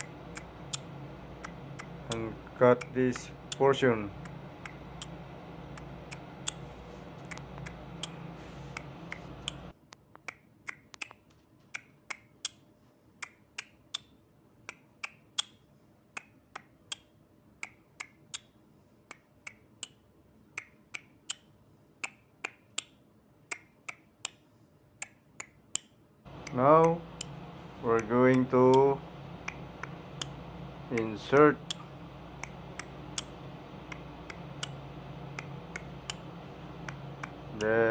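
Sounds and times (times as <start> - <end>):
sharp light clicks: 0.0 - 6.6, 25.0 - 37.7
low background hum: 0.0 - 37.9.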